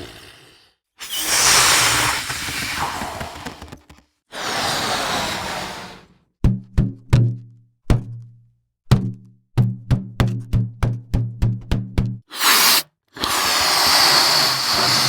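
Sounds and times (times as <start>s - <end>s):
hissing whoosh: 12.3s - 15.0s.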